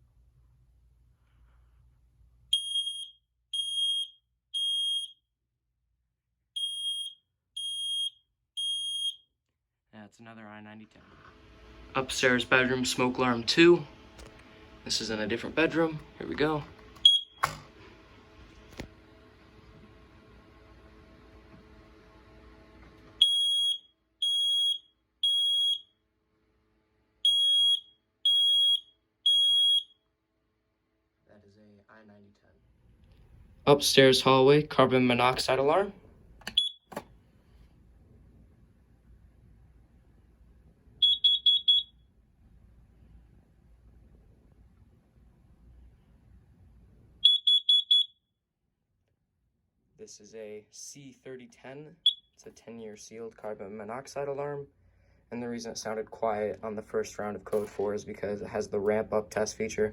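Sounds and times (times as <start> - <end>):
smoke alarm beeping: 2.5 - 5.2, 6.6 - 9.2, 17.0 - 17.6, 23.2 - 26.0, 27.2 - 30.0, 36.4 - 36.9, 41.0 - 42.0, 47.2 - 48.2, 52.0 - 52.3
faint low hum: 31.3 - 47.3.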